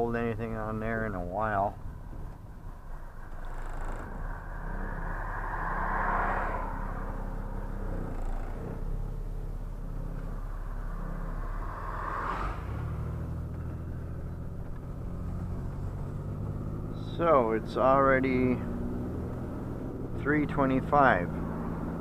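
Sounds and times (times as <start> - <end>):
vehicle engine running: 0.0 - 22.0
brief whooshes: 11.8 - 13.1.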